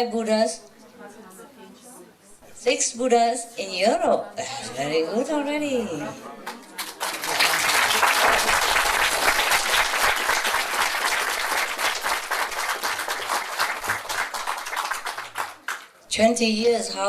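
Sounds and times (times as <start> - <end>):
audience applauding: 6.4 - 16.0.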